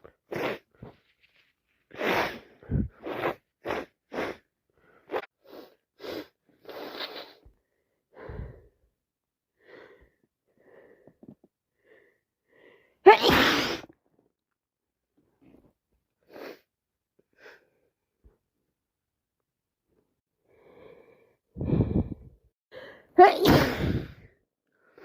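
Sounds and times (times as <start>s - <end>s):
person sneezing: 13.1s - 13.9s, 23.2s - 24.2s.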